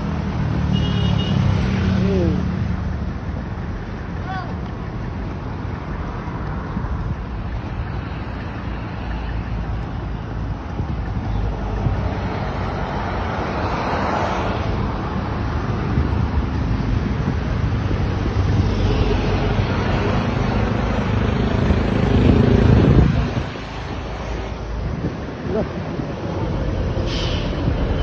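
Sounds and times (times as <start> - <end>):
wind blowing on microphone: 14.8 - 28.0.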